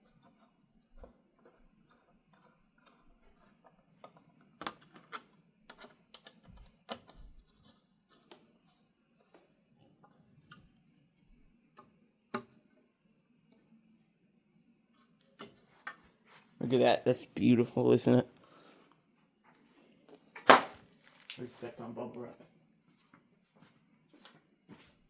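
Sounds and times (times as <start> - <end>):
small clicks and taps of fan parts: 0.1 - 8.4
sharp knock: 20.5 - 20.8.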